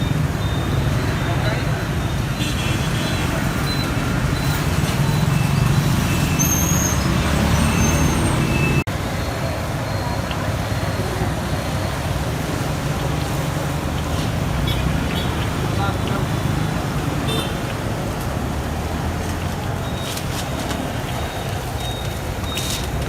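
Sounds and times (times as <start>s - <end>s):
street traffic rumble: 0.0s - 23.0s
faint voices: 9.0s - 23.0s.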